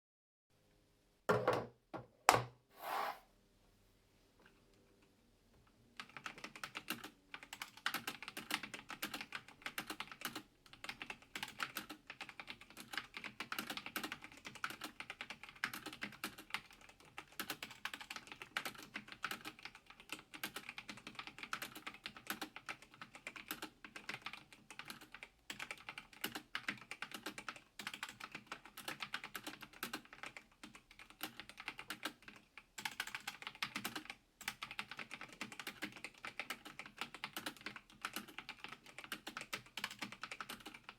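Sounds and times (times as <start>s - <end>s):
mechanical keyboard typing: 6.0s - 40.9s.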